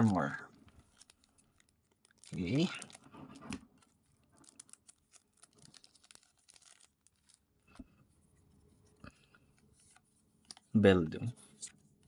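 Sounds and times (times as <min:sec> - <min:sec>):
foil wrapper crinkling and tearing: 0:00.0 - 0:07.8.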